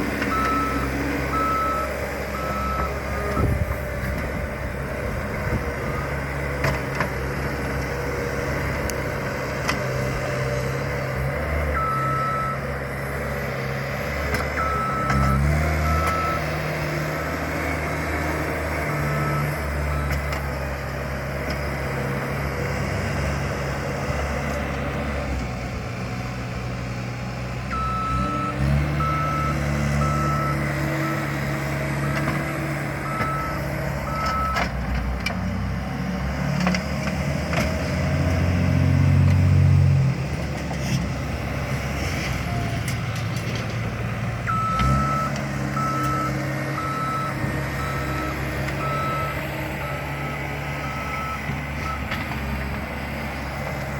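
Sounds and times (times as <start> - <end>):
bulldozer diesel engine: 0.0 - 53.9
reversing alarm beeping: 0.3 - 3.5, 11.7 - 12.6, 14.6 - 16.5, 27.7 - 31.3, 33.0 - 34.6, 44.5 - 52.1.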